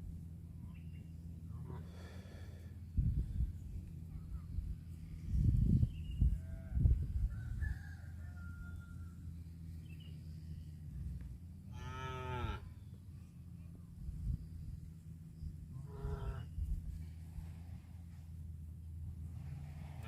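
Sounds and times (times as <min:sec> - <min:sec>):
steady low hum: 0:00.0 - 0:20.0
cow mooing: 0:11.7 - 0:12.6, 0:15.8 - 0:16.5.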